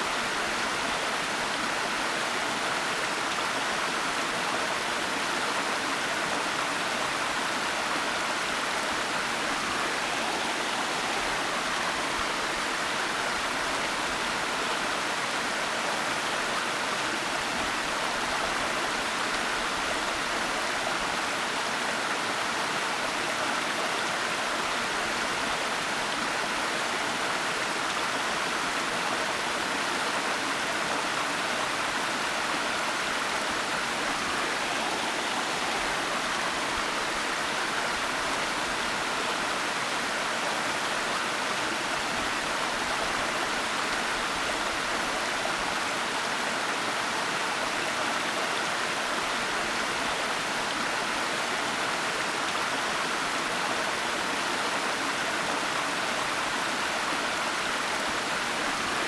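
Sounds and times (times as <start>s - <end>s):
waterfall rushing: 8.8s - 13.1s, 31.6s - 39.5s.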